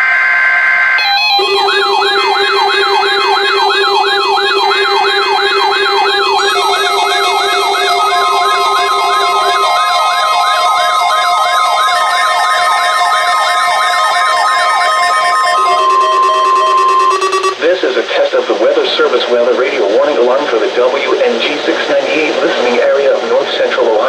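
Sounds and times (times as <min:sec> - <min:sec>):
siren-like sweeping alarm tone: 0:00.0 - 0:17.6
steady alert tones: 0:01.0 - 0:12.5, 0:14.4 - 0:17.6
steady high tone: 0:01.0 - 0:17.8.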